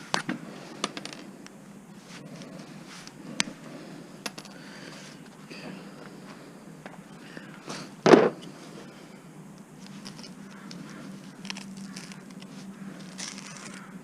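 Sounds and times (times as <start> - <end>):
small parts clicking and rattling: 0.8 - 1.3, 4.2 - 4.6, 9.8 - 13.9.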